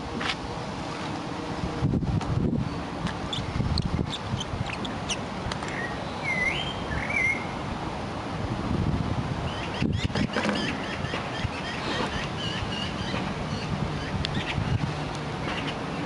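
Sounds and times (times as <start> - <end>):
wind buffeting microphone: 1.4 - 5.9, 6.5 - 16.0
small bird chirping: 2.7 - 7.4.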